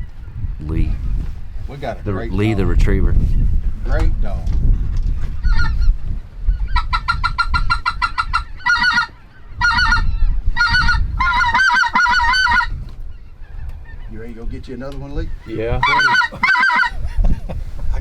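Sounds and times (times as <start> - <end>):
goose clucking: 6.8 - 10.0, 10.6 - 12.8, 15.8 - 17.3
goose honking: 10.6 - 12.7, 15.8 - 17.0.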